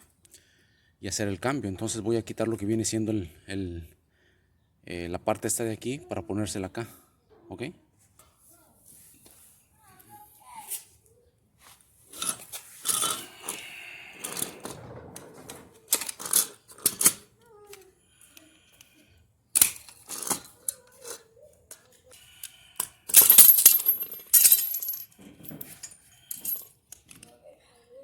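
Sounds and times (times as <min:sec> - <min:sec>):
metal parts clicking and clinking: 0:14.2 - 0:17.2, 0:19.6 - 0:21.2, 0:22.8 - 0:27.2
metal clatter: 0:23.1 - 0:26.6.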